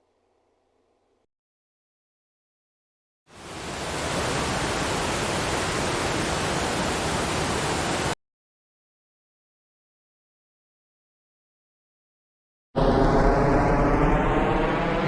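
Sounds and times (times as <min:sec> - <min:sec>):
steady static rushing noise: 0:03.3 - 0:08.2.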